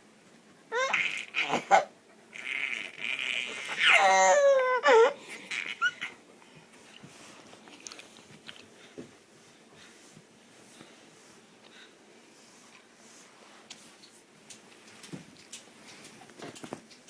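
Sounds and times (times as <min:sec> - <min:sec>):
baby high-pitched cries: 0:00.7 - 0:01.9, 0:03.5 - 0:06.1.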